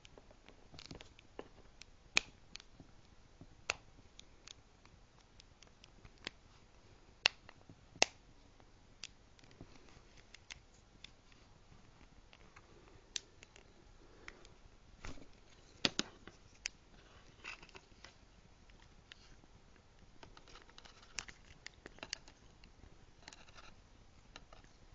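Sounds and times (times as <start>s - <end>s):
plastic phone parts clicking: 20.2s - 22.4s.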